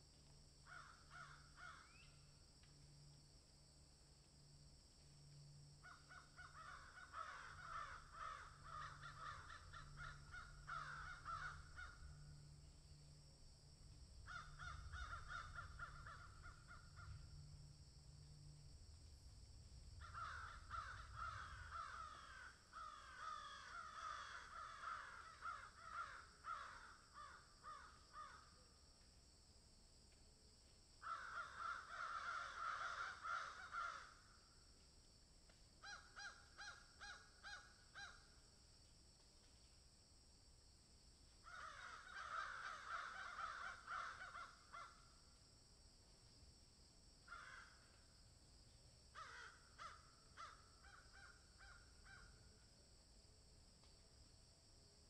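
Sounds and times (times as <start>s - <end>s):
crows cawing: 0.6s - 2.0s, 5.8s - 12.6s, 14.2s - 17.5s, 20.0s - 28.5s, 31.0s - 34.3s, 35.8s - 38.3s, 41.4s - 45.1s, 47.3s - 48.0s, 49.1s - 52.3s.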